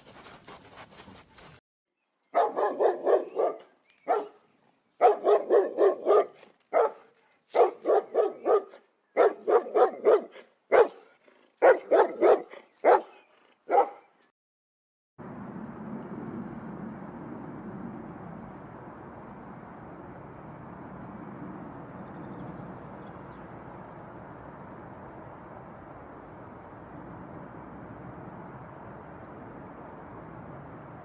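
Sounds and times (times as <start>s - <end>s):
dog barking: 2.3s - 4.4s, 5.0s - 14.1s.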